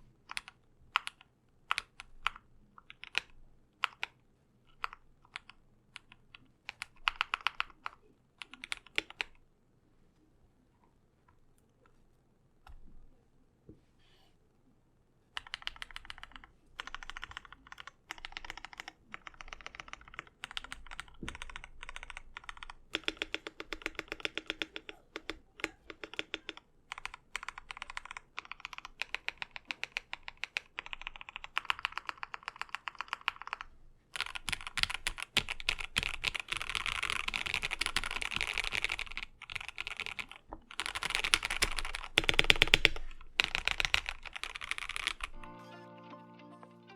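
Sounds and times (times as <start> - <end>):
mechanical keyboard typing: 0.0 - 9.4, 15.4 - 45.4.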